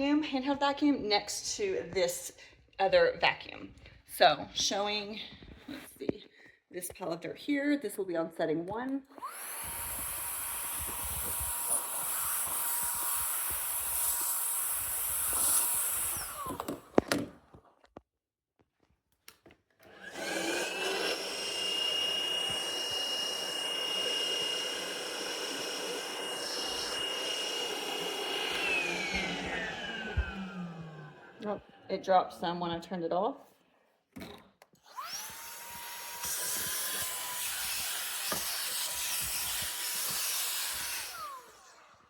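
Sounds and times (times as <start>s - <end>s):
handheld vacuum cleaner whining: 9.1s - 17.4s, 19.8s - 31.9s, 34.7s - 42.0s.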